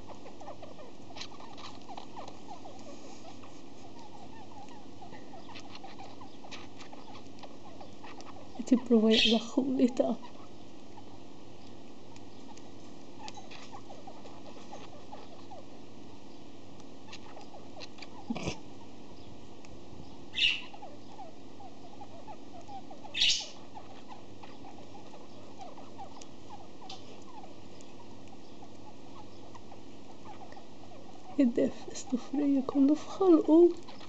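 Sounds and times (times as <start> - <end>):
steady low hum: 0.0 - 34.0
budgie sniffly sounds: 2.6 - 4.1, 18.3 - 18.6
budgie clicks and chirps: 11.6 - 15.5.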